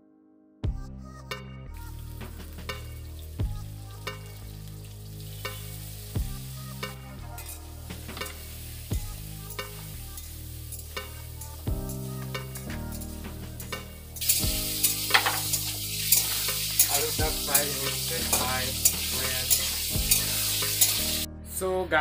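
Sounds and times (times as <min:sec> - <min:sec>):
keyboard chords with a beat: 0:00.0 - 0:21.5
potatoes sizzling in hot oil: 0:02.0 - 0:12.2, 0:14.2 - 0:21.3.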